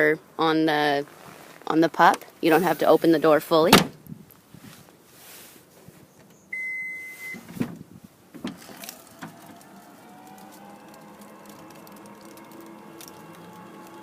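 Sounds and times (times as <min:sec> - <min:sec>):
electronic beep: 0:06.5 - 0:07.4
clunks: 0:07.3 - 0:14.0
liftgate motor whine: 0:08.4 - 0:14.0.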